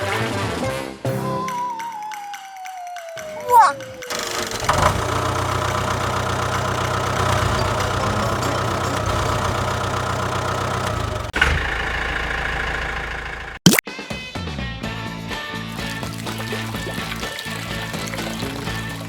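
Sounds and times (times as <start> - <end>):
engine idling: 4.1 - 13.6.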